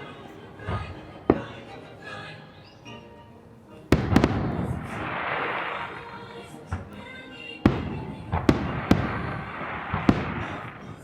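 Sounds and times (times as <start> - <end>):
crackling hiss: 3.5 - 11.0
fireworks booming: 3.9 - 6.0, 7.7 - 11.0.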